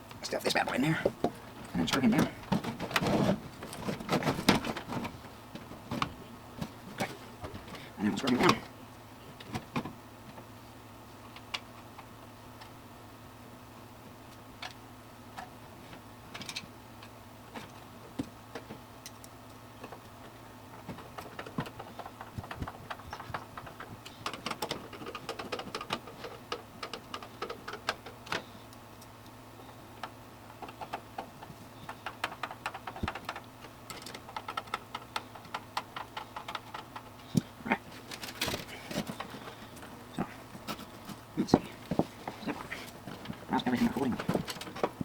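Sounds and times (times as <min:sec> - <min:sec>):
faint low hum: 0:00.0 - 0:45.0
small clicks and rattles of screwing: 0:16.3 - 0:45.0.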